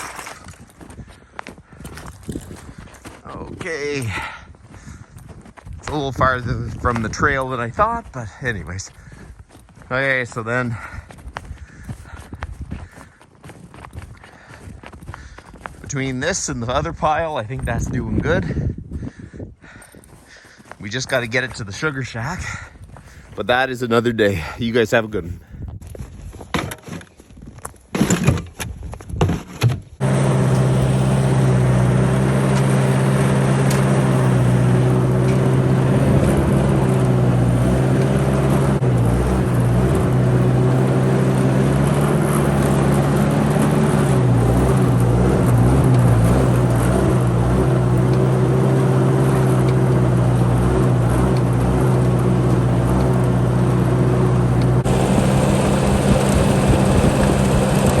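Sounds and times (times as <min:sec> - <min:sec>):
engine running steadily: 0:00.0 - 0:16.0, 0:30.0 - 0:58.0.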